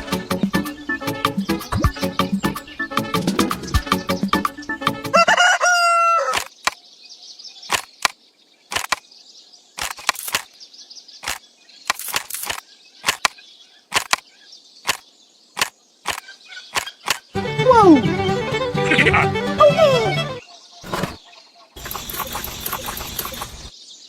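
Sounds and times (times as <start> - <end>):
music: 0.0 - 5.3, 17.4 - 20.4
rooster crowing: 5.1 - 6.4
sharp clicks: 7.7 - 9.0, 9.8 - 10.6, 11.2 - 14.2, 14.8 - 15.0, 15.6 - 17.3, 21.8 - 23.7
high insect-like chirring: 21.8 - 23.7.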